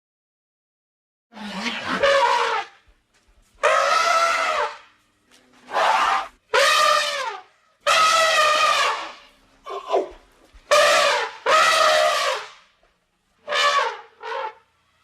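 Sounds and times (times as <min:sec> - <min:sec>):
elephant trumpeting: 0:01.3 - 0:02.8, 0:03.6 - 0:04.9, 0:05.7 - 0:12.6, 0:13.4 - 0:14.7.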